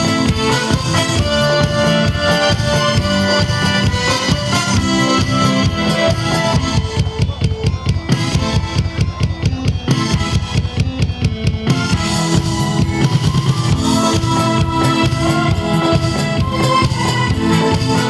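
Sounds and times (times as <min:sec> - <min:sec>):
drum break kick and snare: 0:00.0 - 0:18.0
full band music: 0:00.0 - 0:18.0.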